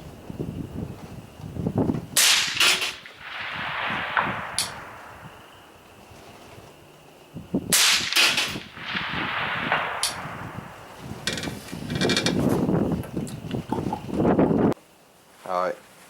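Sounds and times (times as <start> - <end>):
suppressed rifle shots: 2.2 - 5.2, 7.7 - 10.8.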